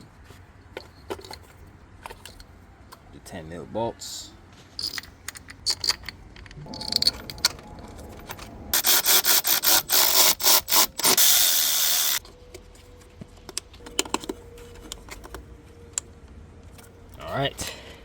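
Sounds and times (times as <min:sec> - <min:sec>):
metal parts clicking: 0:04.8 - 0:12.2
electric ratchet driving bolt: 0:08.8 - 0:12.2.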